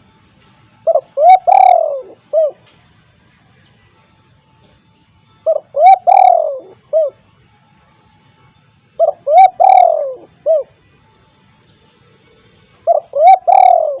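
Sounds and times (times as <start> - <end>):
dove cooing: 0.8 - 2.7, 5.4 - 7.2, 9.0 - 10.8, 12.8 - 14.0.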